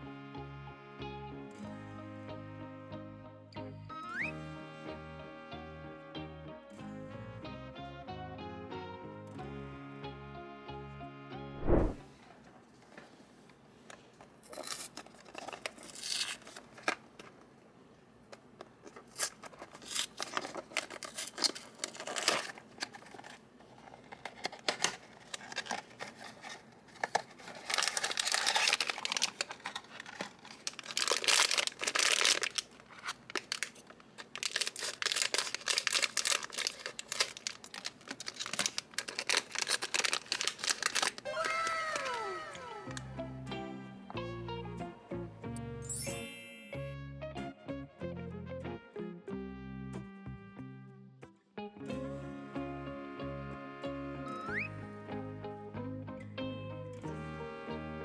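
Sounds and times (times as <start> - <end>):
packaging wrapping rustling: 14.5 - 17.0, 19.0 - 42.7.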